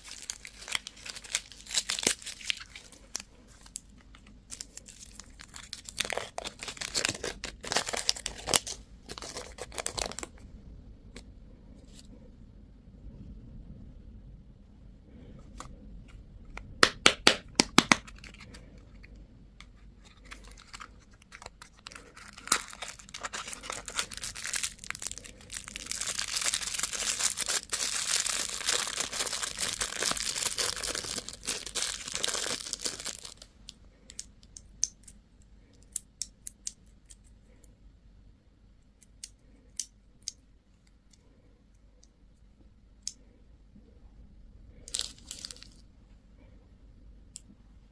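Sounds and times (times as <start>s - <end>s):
plastic wrapper crinkling and tearing: 0.0s - 10.4s, 17.6s - 19.1s, 20.0s - 33.5s, 44.9s - 45.8s.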